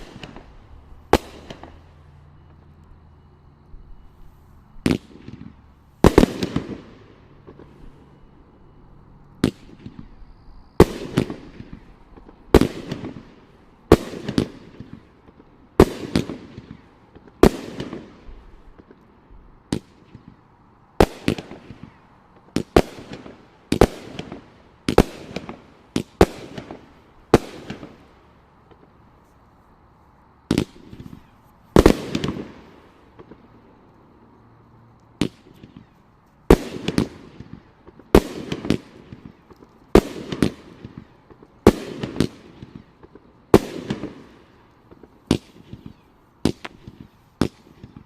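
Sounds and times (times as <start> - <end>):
firework bangs: 0.0 - 2.6, 4.8 - 8.2, 9.4 - 10.2, 10.8 - 19.0, 19.7 - 29.0, 30.4 - 33.8, 35.2 - 48.0.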